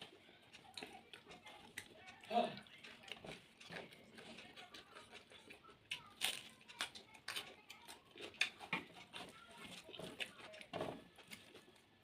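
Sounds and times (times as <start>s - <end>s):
person chewing with mouth clicks: 0.0s - 11.9s.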